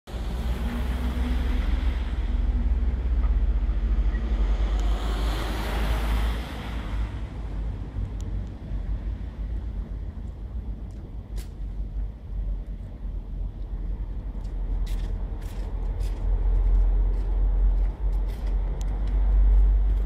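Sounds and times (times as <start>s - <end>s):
vehicle passing by: 0.1s - 8.0s.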